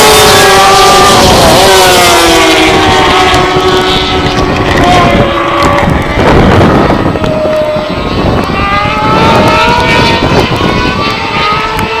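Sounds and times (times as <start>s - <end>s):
motorcycle engines revving high: 0.0s - 12.0s.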